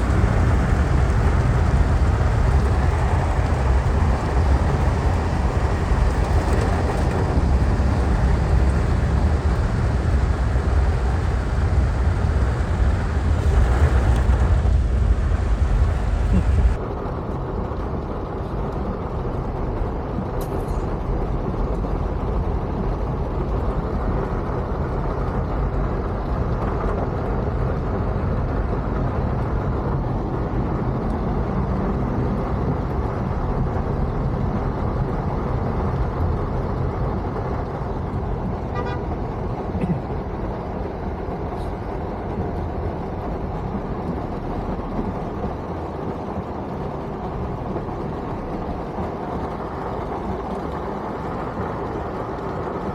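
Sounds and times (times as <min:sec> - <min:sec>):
traffic heard from inside car: 0:00.0 - 0:16.9, 0:19.8 - 0:52.9
heavy rain: 0:00.0 - 0:20.3, 0:21.3 - 0:52.9
car horn tooting: 0:38.7 - 0:39.1.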